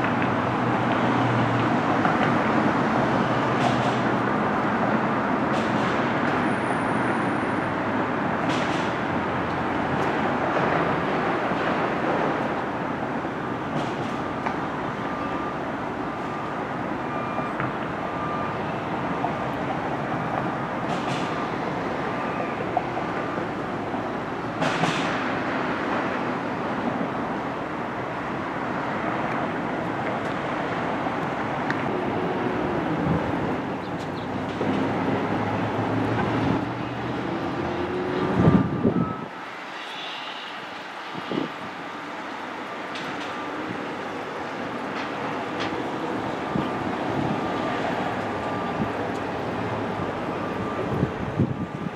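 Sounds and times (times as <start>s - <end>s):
moving train rumble and rattle: 0.0s - 14.9s, 18.9s - 51.9s.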